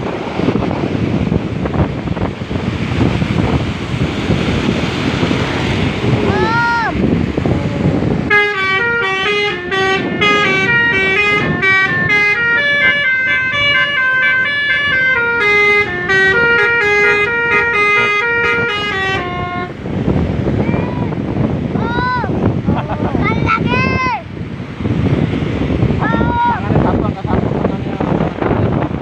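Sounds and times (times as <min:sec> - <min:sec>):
multi-tone bus horn melody: 0:08.2 - 0:20.0.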